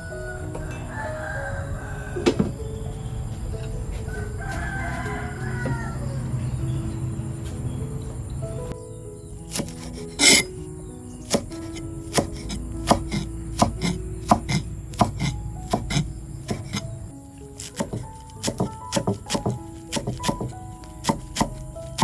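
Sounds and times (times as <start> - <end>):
soft background music: 0.0 - 22.0
knife chopping on cutting board: 9.5 - 10.5, 11.3 - 16.8, 17.6 - 22.0.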